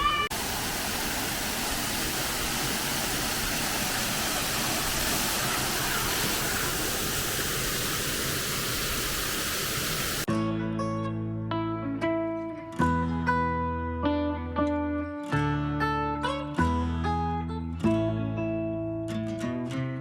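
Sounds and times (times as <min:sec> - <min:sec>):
falling splashing water: 0:00.1 - 0:10.3.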